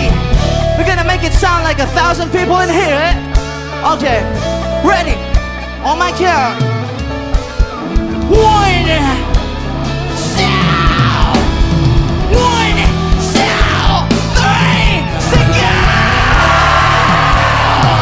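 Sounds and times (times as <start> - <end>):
bass line: 0.0 - 18.0
live band playing: 0.0 - 18.0
drum hits: 11.2 - 18.0
crowd shouting and whooping: 13.4 - 18.0.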